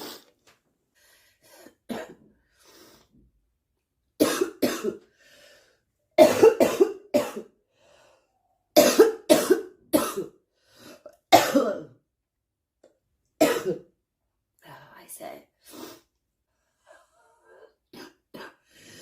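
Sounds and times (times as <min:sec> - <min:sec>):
girl coughing: 0:01.9 - 0:02.2, 0:04.2 - 0:05.0, 0:06.2 - 0:07.5, 0:08.8 - 0:10.4, 0:11.3 - 0:11.9, 0:13.4 - 0:13.8.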